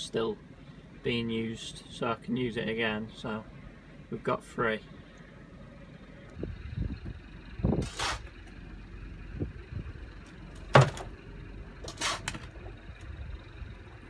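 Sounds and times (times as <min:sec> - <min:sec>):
compost scraping and rustling: 0:07.8 - 0:08.4, 0:11.8 - 0:12.7
thud: 0:10.6 - 0:11.1.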